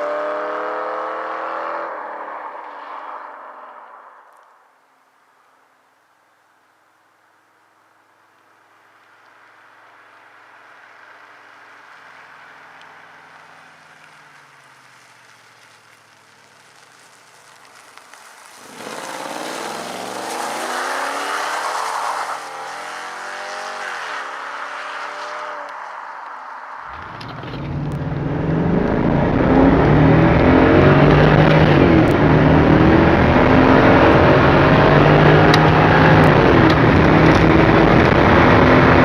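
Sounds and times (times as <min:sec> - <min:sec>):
car engine accelerating: 0:00.0 - 0:04.1, 0:17.5 - 0:39.0.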